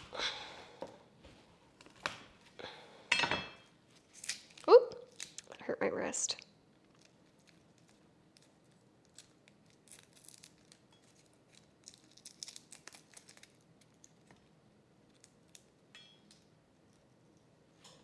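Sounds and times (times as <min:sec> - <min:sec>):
faint clicks of utensils: 0:15.9 - 0:18.0.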